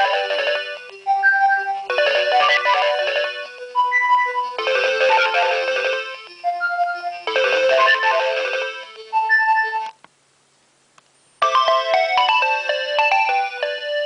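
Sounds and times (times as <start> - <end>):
electronic ringtone melody: 0.0 - 9.9, 11.4 - 14.0
faint click: 11.0 - 11.2.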